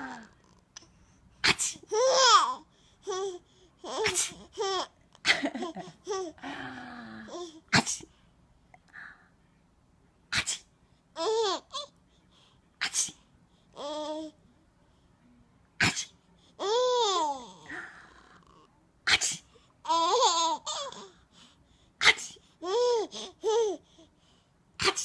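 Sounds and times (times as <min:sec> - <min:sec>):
pretend sneezes: 0:01.4 - 0:01.9, 0:04.0 - 0:04.4, 0:07.7 - 0:08.1, 0:10.3 - 0:10.7, 0:12.8 - 0:13.2, 0:15.8 - 0:16.2, 0:19.1 - 0:19.6, 0:22.0 - 0:22.4, 0:24.8 - 0:25.0
baby giggling and babbling: 0:01.9 - 0:05.0, 0:05.7 - 0:06.4, 0:11.2 - 0:11.9, 0:16.6 - 0:17.7, 0:19.8 - 0:21.1, 0:22.6 - 0:23.9.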